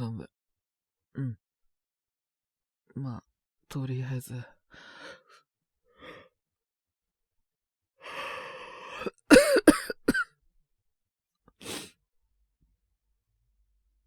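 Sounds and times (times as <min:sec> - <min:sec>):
man breathing: 0:04.8 - 0:06.3, 0:08.0 - 0:09.2
man coughing: 0:09.0 - 0:10.2.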